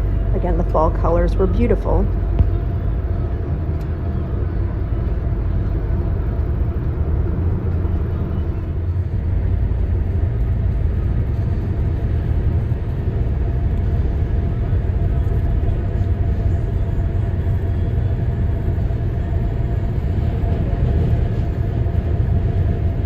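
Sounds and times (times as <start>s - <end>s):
car road and engine rumble: 0.0s - 23.0s.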